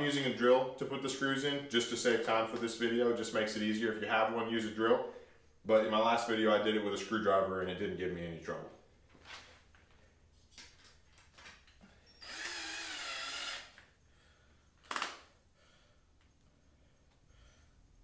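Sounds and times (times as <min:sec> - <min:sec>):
power drill driving screw: 0:12.1 - 0:13.8, 0:14.9 - 0:15.2.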